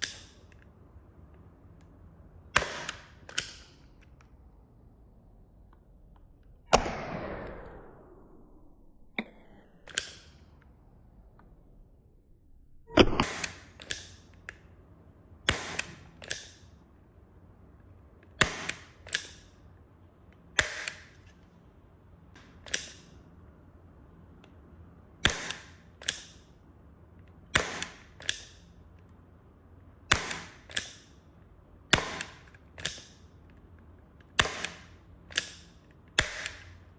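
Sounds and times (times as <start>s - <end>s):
revolver gunshots: 2.6s - 3.3s, 6.7s - 10.4s, 12.2s - 14.2s, 15.5s - 16.2s, 32.0s - 32.4s.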